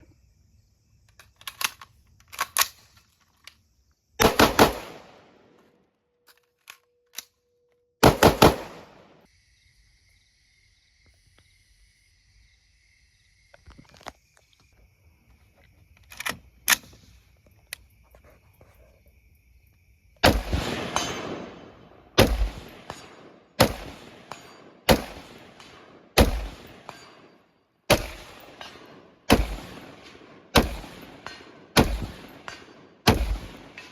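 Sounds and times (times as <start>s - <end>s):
rifle shots: 4.2s - 5.5s, 8.0s - 9.2s, 20.2s - 27.3s, 27.9s - 33.9s.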